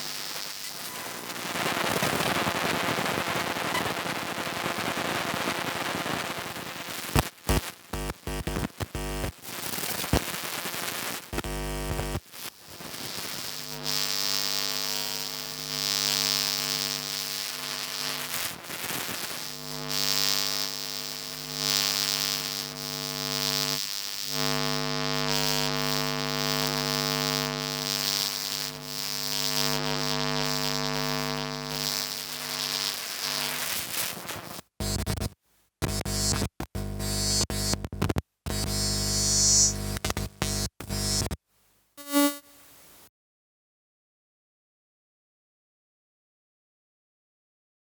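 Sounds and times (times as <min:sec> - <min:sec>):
electromagnetic buzzing hum: 0:00.0 - 0:41.4, 0:42.0 - 0:43.0
crackles and clicks: 0:27.2 - 0:41.4.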